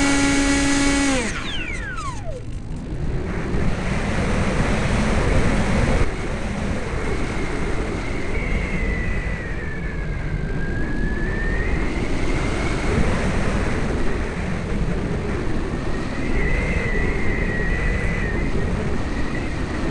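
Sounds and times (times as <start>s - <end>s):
model plane electric motor whining: 0.0s - 2.8s
wind rush on microphone: 0.0s - 19.9s.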